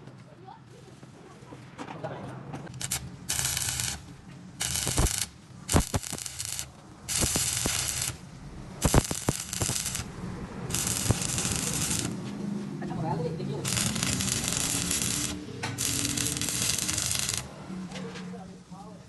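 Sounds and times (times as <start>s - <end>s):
welding arc crackling: 2.7s - 12.2s, 13.6s - 17.6s
sharp clicks: 4.6s - 8.2s, 8.8s - 10.1s, 10.7s - 12.2s.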